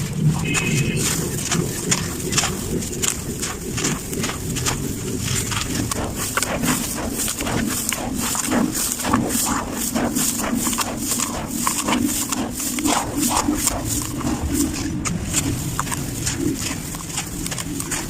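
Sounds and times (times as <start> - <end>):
sand-cement crumbling and crunching: 0.0 - 18.0.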